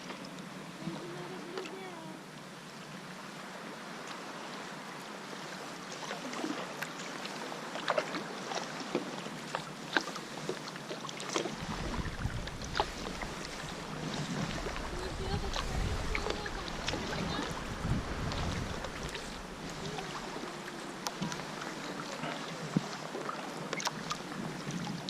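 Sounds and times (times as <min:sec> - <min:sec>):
sea water washing: 0:00.0 - 0:25.0
water splashing around a kayak: 0:00.0 - 0:25.0
low rumble: 0:14.4 - 0:20.2.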